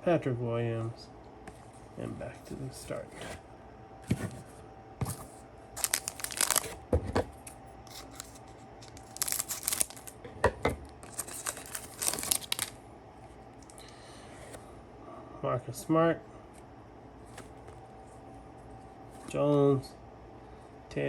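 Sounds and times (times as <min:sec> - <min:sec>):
foil wrapper tearing and crinkling: 0:05.8 - 0:06.8, 0:07.9 - 0:10.2, 0:11.0 - 0:12.8.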